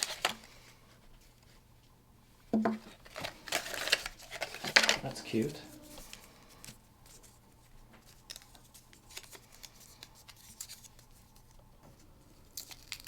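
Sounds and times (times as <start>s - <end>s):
plastic packaging clicks and scratches: 0.0s - 0.5s, 2.8s - 5.2s, 8.0s - 11.6s, 12.4s - 13.0s.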